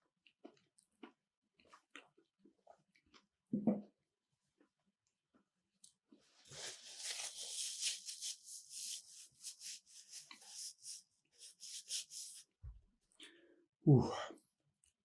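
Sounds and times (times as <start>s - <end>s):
close-miked chewing: 0.2s - 3.3s.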